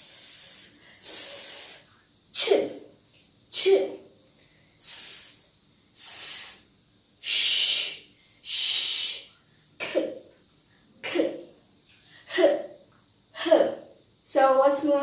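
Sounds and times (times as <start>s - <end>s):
child making breathy hisses: 0.0s - 2.7s, 4.8s - 10.1s.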